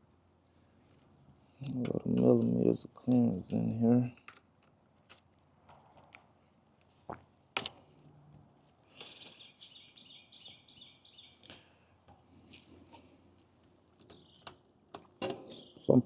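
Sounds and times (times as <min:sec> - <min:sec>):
bird chirping: 0:08.9 - 0:11.7, 0:14.0 - 0:16.0.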